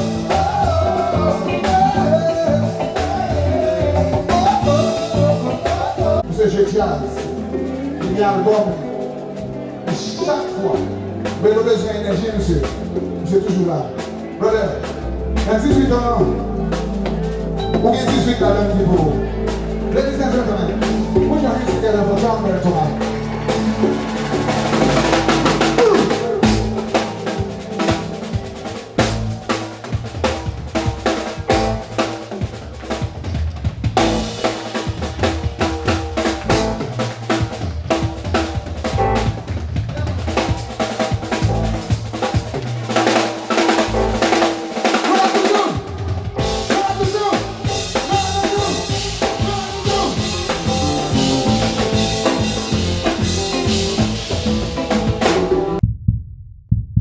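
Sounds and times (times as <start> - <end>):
live band playing: 0.0 - 55.8
fast snare and rim strokes: 16.7 - 55.8.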